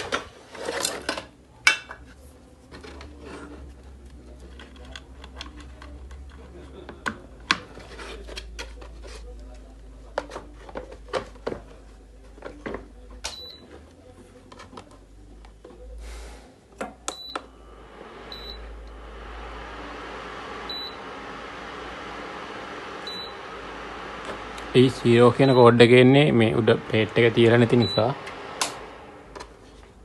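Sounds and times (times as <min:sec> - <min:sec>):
cooling fan whirring: 0:17.1 - 0:30.0.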